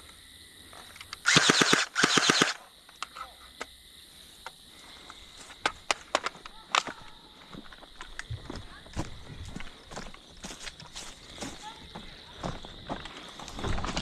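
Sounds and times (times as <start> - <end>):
sharp clicks: 0.9 - 3.7
airsoft gun bursts: 1.2 - 2.6.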